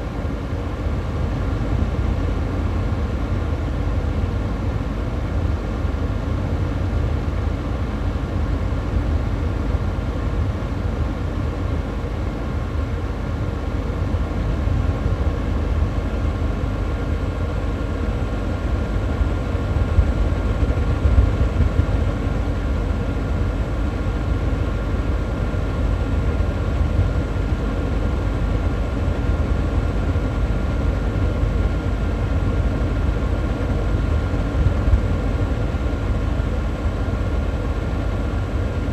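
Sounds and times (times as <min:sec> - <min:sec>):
air purifier fan rushing: 0:00.0 - 0:38.9
faint fan whine: 0:00.0 - 0:38.9.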